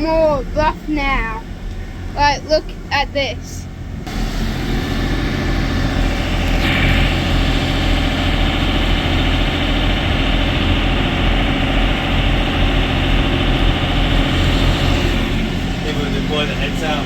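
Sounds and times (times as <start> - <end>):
boat engine running: 0.0 - 17.0
loud rushing hiss: 4.1 - 17.0.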